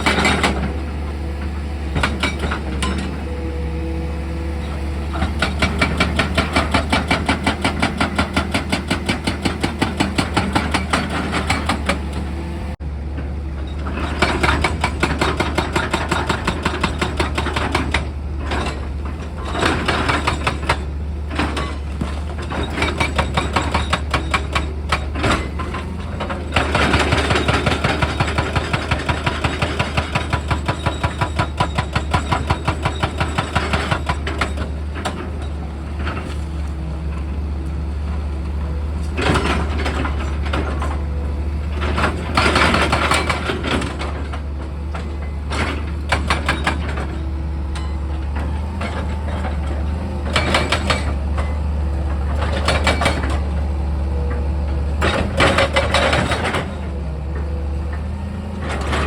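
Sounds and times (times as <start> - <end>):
diesel engine hum: 0.0 - 15.3, 34.1 - 59.0.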